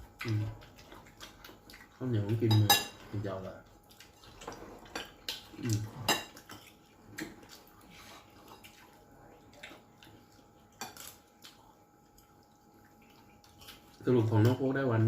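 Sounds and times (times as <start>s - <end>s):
dishes and utensils clinking: 2.3s - 3.2s, 4.4s - 6.7s.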